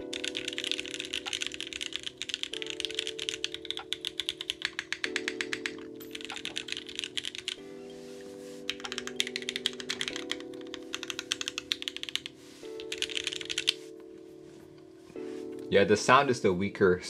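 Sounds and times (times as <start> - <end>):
mechanical keyboard typing: 0.0 - 7.6, 8.7 - 13.8
soft background music: 0.0 - 17.0.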